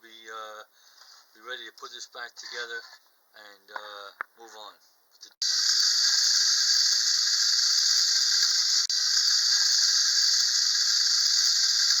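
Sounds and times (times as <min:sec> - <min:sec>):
clockwork toy train whirring: 0:05.4 - 0:12.0.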